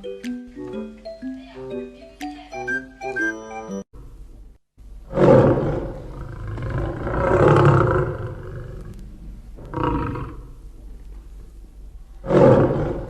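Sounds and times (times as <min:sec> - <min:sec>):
animal roaring: 0:05.1 - 0:10.6, 0:12.2 - 0:13.0.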